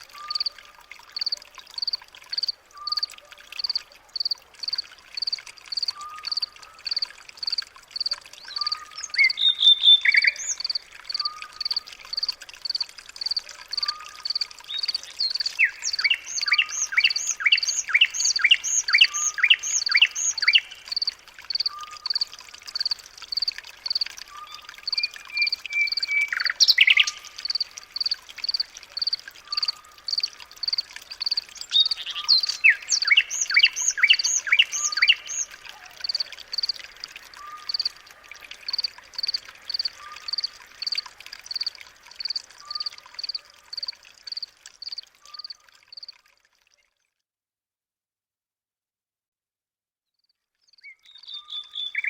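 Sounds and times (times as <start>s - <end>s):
flurry of bird chirps: 2.8s - 22.2s, 23.9s - 36.8s, 50.7s - 52.0s.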